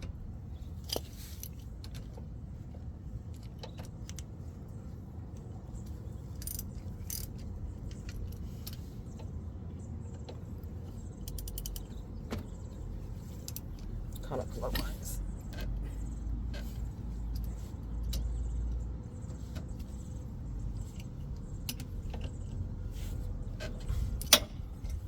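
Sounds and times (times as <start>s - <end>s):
steady low rumble: 0.0s - 25.0s
ratchet clicks: 11.2s - 11.9s.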